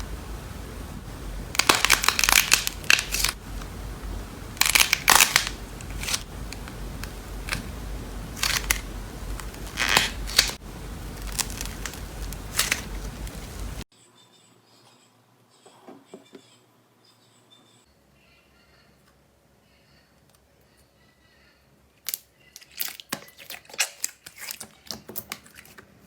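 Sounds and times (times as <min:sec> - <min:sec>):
slime crackling and popping: 0:01.5 - 0:03.8, 0:04.5 - 0:13.8.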